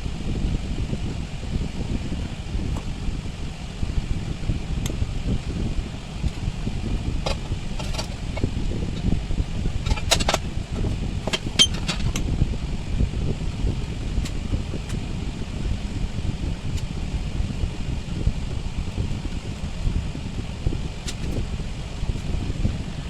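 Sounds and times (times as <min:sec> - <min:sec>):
low rumble of air noise: 0:00.0 - 0:23.0.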